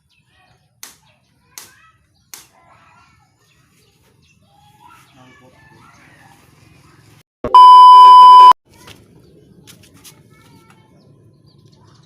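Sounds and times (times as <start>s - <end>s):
censor bleep: 7.5s - 8.6s.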